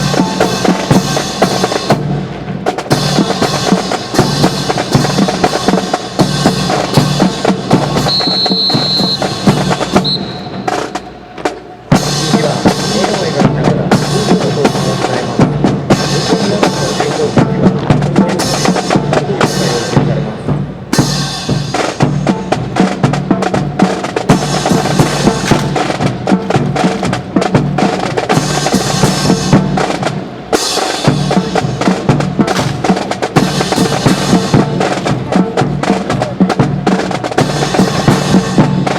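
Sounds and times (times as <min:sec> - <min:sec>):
marching drums beating: 0:00.0 - 0:38.9
high whistle note: 0:08.0 - 0:11.1.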